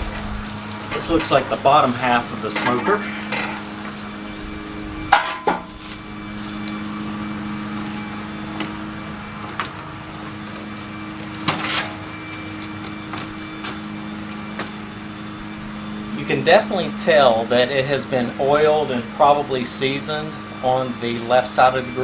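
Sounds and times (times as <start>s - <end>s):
cardboard and styrofoam rustling: 0.0s - 15.1s
low hum: 0.0s - 21.0s.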